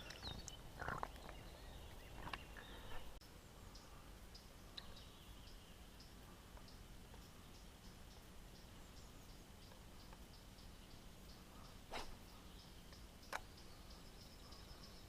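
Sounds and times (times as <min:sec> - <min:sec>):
low steady stream rumble: 0:00.0 - 0:15.0
small birds chirping: 0:00.0 - 0:15.0.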